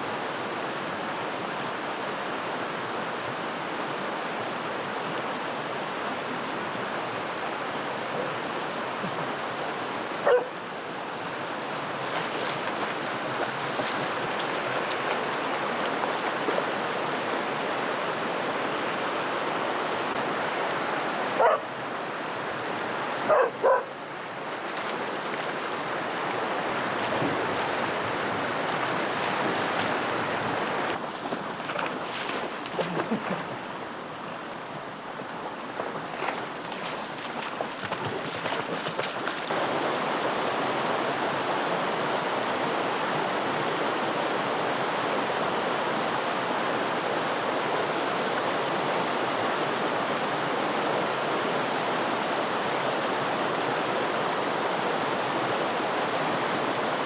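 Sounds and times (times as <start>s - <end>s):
creek water rushing: 0.0s - 57.0s
dog barking: 10.2s - 10.6s, 21.4s - 21.7s, 23.3s - 23.9s.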